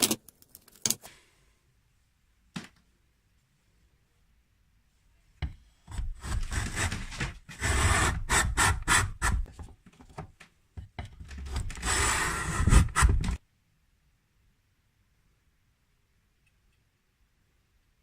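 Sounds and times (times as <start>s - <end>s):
wood rubbing and scraping: 11.2s - 13.4s.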